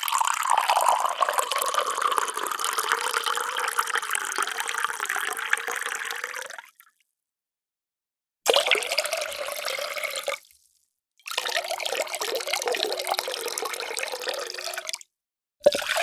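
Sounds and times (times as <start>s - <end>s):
water pouring and splashing: 15.6s - 16.0s.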